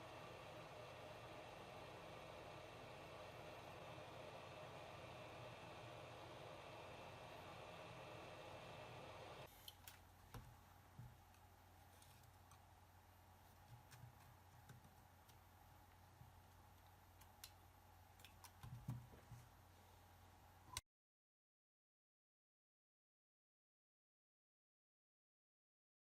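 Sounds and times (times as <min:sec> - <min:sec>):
faint clicks and taps: 0:13.4 - 0:19.5.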